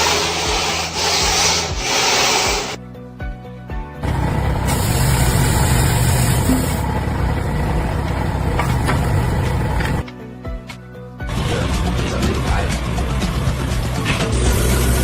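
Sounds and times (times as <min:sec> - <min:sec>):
machine rumbling: 0:04.0 - 0:10.0.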